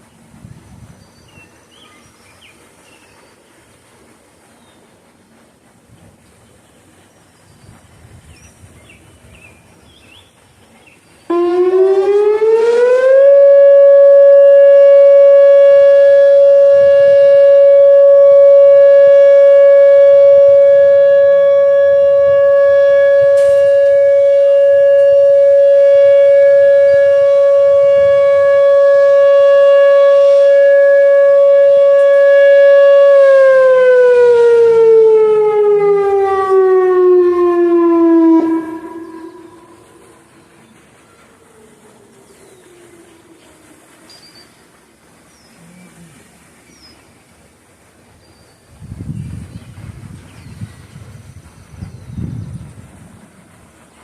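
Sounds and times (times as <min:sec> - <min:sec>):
faint wind noise: 0:00.0 - 0:11.7, 0:14.1 - 0:54.0
electronic warning siren: 0:11.3 - 0:40.3.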